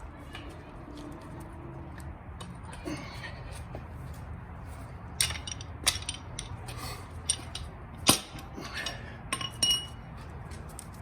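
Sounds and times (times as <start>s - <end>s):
metal clinks and knocks: 5.2s - 10.0s.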